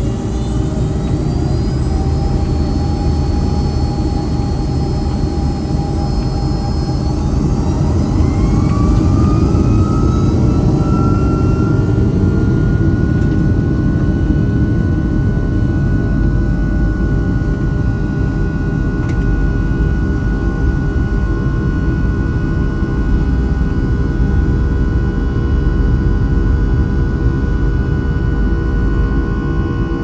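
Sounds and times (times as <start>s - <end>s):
jet engines spooling up: 0.0s - 17.6s
heavy steady rumble: 0.0s - 30.0s.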